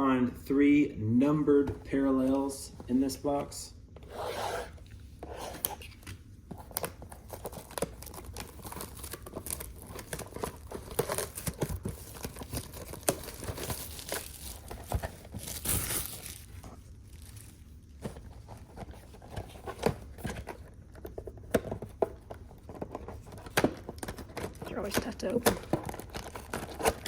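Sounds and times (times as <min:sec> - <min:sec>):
card box packaging ripping: 0:06.6 - 0:17.7, 0:25.5 - 0:27.0
plastic wrapping crinkling and tearing: 0:06.7 - 0:19.9, 0:22.7 - 0:27.0.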